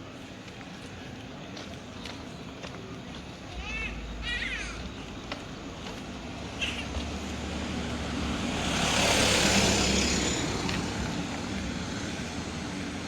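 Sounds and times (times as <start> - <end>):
vehicle passing by: 4.0 - 13.0.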